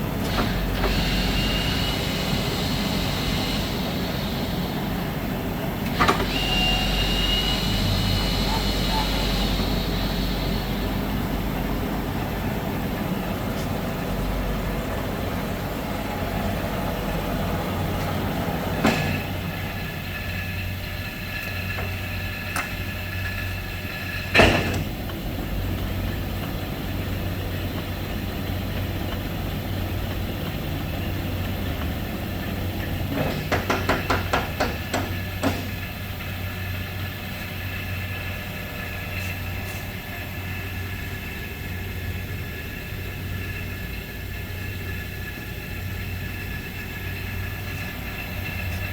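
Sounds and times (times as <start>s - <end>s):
high whine: 0.0s - 24.3s
lathe humming: 0.0s - 48.9s
knock: 33.4s - 35.7s.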